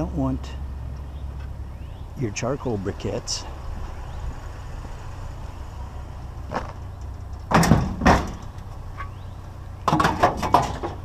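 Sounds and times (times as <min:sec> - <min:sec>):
steady low rumble: 0:00.0 - 0:09.9
scrap clattering and knocking: 0:09.9 - 0:11.0.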